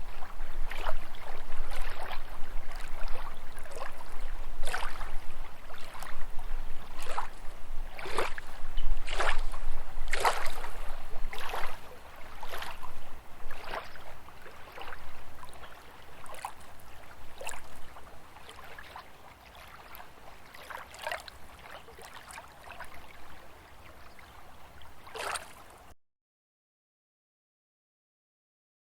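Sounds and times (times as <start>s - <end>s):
lake waves lapping: 0.0s - 25.9s.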